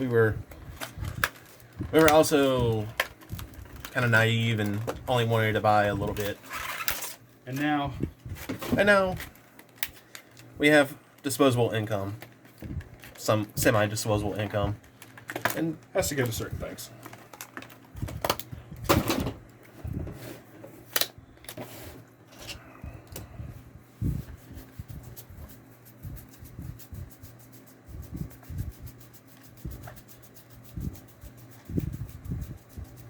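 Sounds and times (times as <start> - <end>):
cards and packaging rustling: 0.0 - 19.0.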